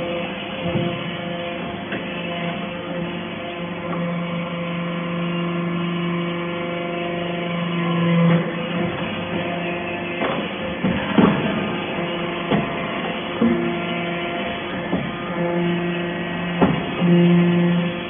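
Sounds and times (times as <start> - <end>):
hydraulic baler humming: 0.0 - 18.0
machine knocks: 0.6 - 1.2, 10.2 - 13.9, 14.8 - 15.4, 16.5 - 17.4.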